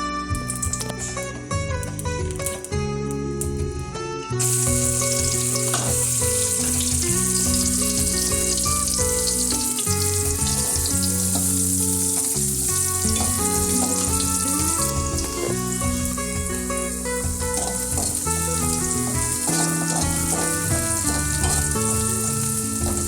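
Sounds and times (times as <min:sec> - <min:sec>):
food sizzling in hot oil: 0:04.4 - 0:23.0.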